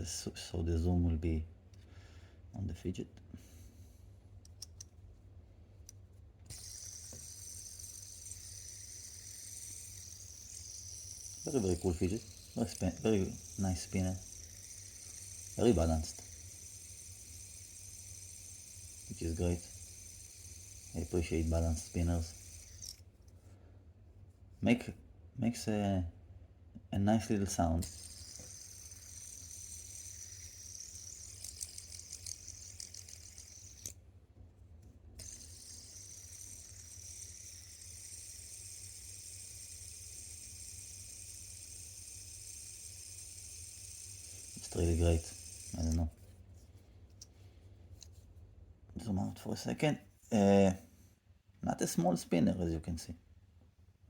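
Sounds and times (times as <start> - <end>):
fidget spinner whirring: 5.8 - 23.2, 27.6 - 34.0, 35.2 - 47.3.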